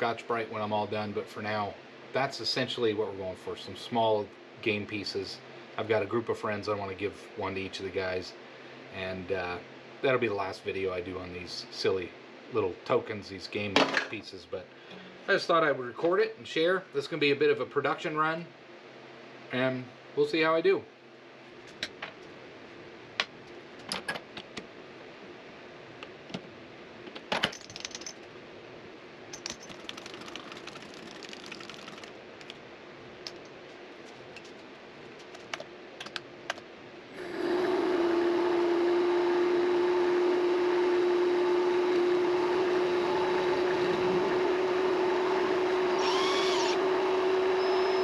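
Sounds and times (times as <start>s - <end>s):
mini lathe running with whine: 37.2s - 48.0s.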